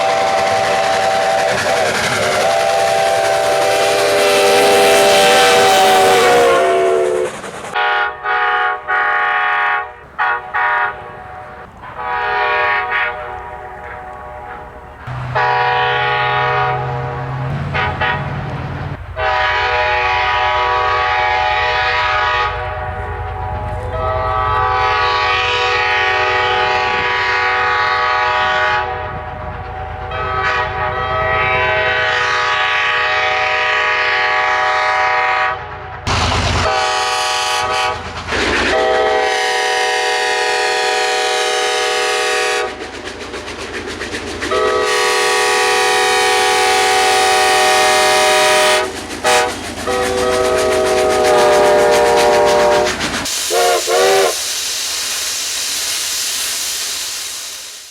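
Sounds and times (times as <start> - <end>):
locomotive air horn blasts: 0.0 - 35.7, 36.5 - 42.8, 44.5 - 54.4
passing train rumble: 0.0 - 57.9.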